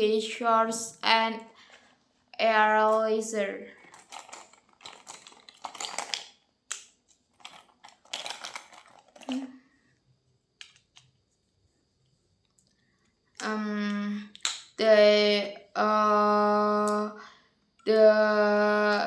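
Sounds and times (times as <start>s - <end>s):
rustling: 3.8s - 6.3s, 7.2s - 9.6s
plastic clicks: 14.3s - 14.7s.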